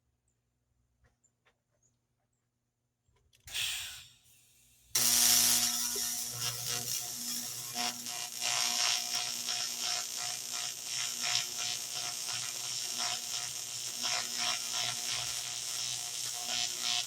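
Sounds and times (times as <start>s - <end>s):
gas hiss: 3.5s - 14.0s
welding arc buzzing and crackling: 5.0s - 17.0s.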